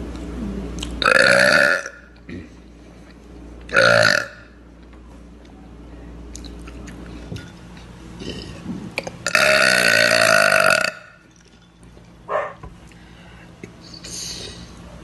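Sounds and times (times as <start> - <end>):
woman burping: 1.0 - 2.5, 3.7 - 4.3, 9.2 - 11.1.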